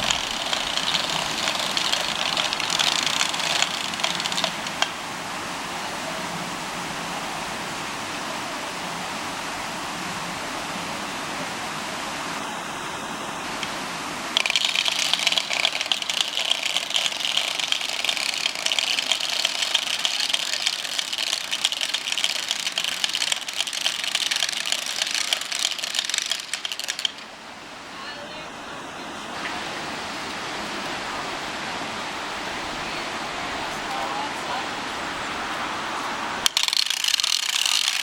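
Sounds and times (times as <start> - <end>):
wooden ratchets and clappers rattling: 0.0 - 5.0, 14.4 - 27.3, 36.4 - 38.0
steady background hiss: 0.0 - 38.0.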